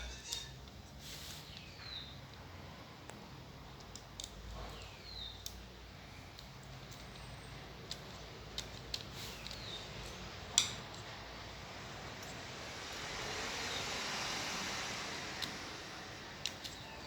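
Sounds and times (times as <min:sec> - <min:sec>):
soft scraping hiss: 0:00.0 - 0:01.7
small clicks and handling noises: 0:00.2 - 0:13.1, 0:16.4 - 0:17.0.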